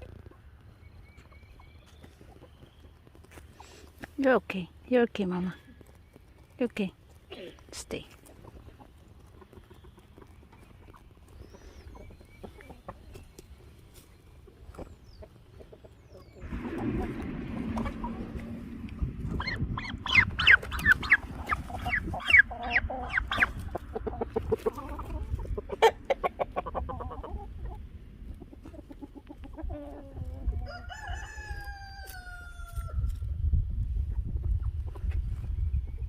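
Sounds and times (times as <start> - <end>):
chickens clucking and squawking: 0.0 - 4.1, 5.8 - 36.0
rooster crowing: 30.6 - 33.1.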